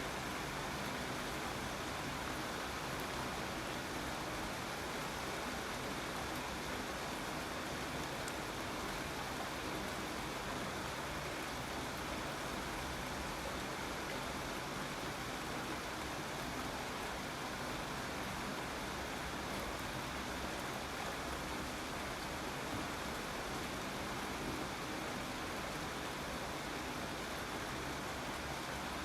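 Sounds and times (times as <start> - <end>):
steady rain falling: 0.0 - 29.0.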